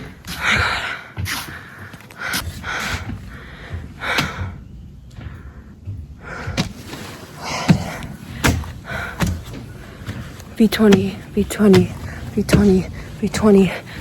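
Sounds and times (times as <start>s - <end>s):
person breathing hard: 0.2s - 10.3s
sharp thumps: 2.4s - 14.0s.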